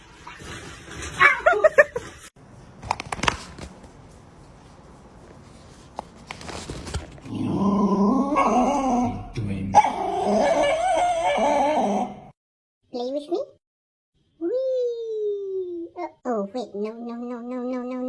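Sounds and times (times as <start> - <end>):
dog whimpering and yipping: 9.8 - 12.1.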